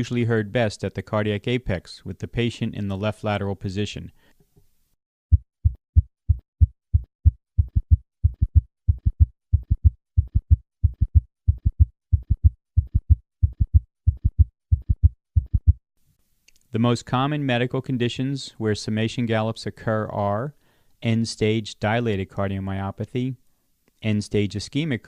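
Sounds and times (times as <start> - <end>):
heartbeat thuds in fast triple rhythm: 5.3 - 15.8.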